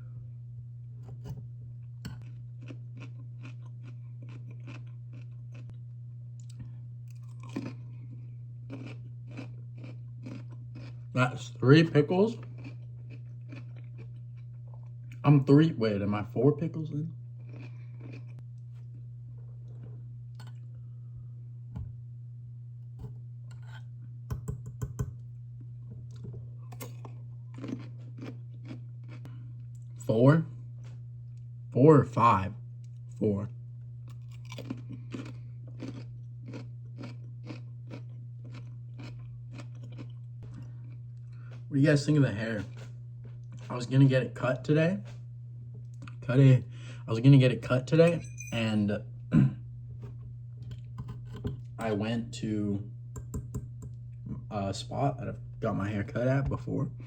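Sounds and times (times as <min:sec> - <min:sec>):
steady low hum: 0:00.0 - 0:57.0
pickle crunching and chewing: 0:01.0 - 0:05.8, 0:06.4 - 0:15.2, 0:16.8 - 0:20.7, 0:26.1 - 0:30.0, 0:34.0 - 0:41.7.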